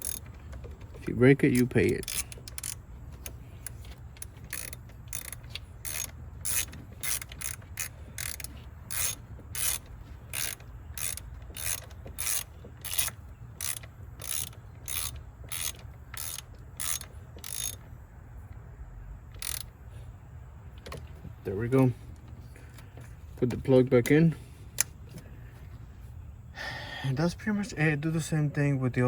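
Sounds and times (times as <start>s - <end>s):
hand ratchet wrench ratcheting: 0.0s - 17.9s, 19.4s - 19.8s.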